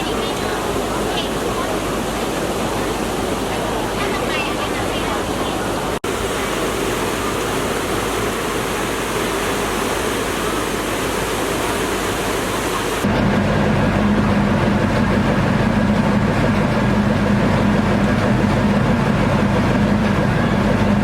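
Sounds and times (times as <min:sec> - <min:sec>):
floodwater rushing: 0:00.0 - 0:21.0
heavy vehicle engine droning: 0:11.9 - 0:21.0.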